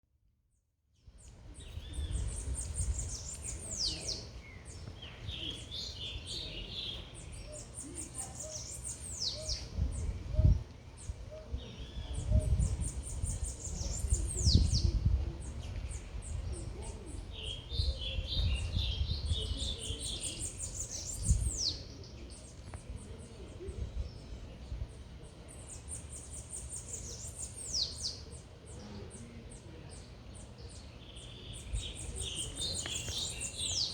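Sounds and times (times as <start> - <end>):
songbird singing: 1.0 - 33.9
bird chirping: 1.2 - 24.8, 25.5 - 33.9
low uneven rumble: 9.6 - 26.5.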